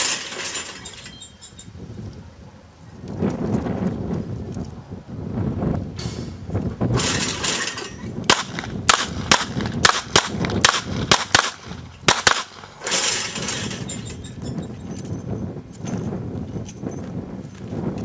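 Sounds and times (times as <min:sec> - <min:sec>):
handgun shots: 0:08.3 - 0:12.6.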